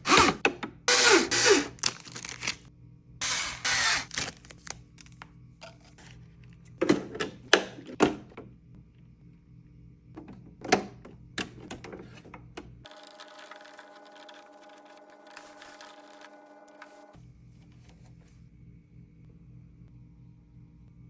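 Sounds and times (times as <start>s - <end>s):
faint steady hum: 0.6s - 21.0s
packaging rustle: 1.7s - 2.7s, 12.9s - 17.1s
parts clicking and thunking: 10.2s - 12.8s.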